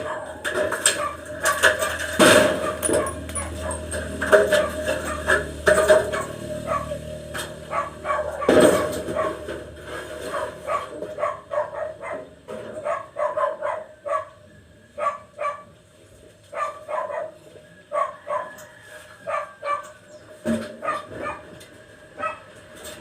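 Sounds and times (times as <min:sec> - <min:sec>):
dog barking: 0:00.0 - 0:01.3, 0:02.6 - 0:03.9, 0:04.5 - 0:05.4, 0:06.1 - 0:07.0, 0:07.7 - 0:09.5, 0:10.2 - 0:14.4, 0:15.0 - 0:15.7, 0:16.5 - 0:20.0, 0:20.8 - 0:21.5, 0:22.2 - 0:22.5.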